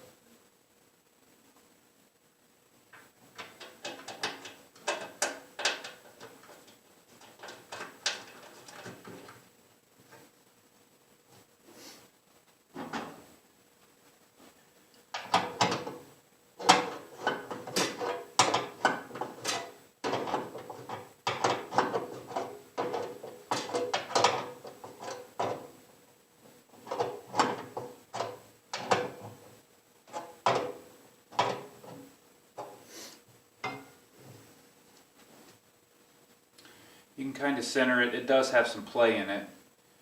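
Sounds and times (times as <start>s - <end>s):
metal smokestack clanking and scraping: 16.6s - 25.7s.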